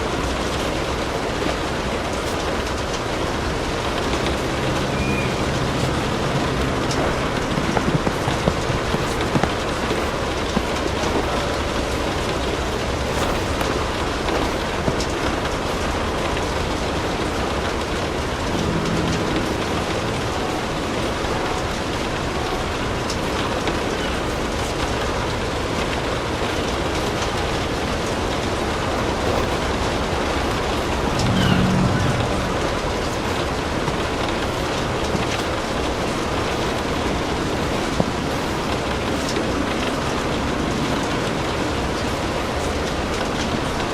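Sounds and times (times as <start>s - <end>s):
steady rain hiss: 0.0s - 43.9s
low rumble: 2.9s - 9.8s, 16.8s - 22.3s, 30.5s - 34.3s.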